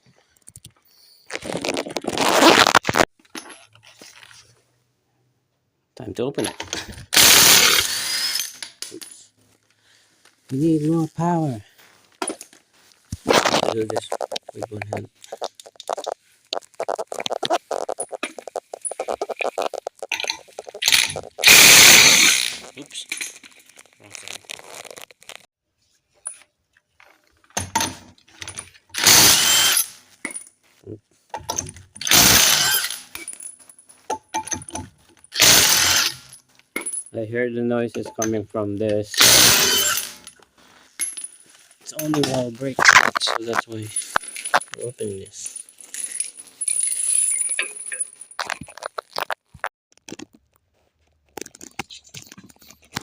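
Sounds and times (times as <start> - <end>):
metal tool rasping: 13.2 - 22.8
metal tools clinking: 16.8 - 25.0, 38.0 - 42.5, 43.2 - 49.3
light metallic clinks and knocks: 43.8 - 48.8.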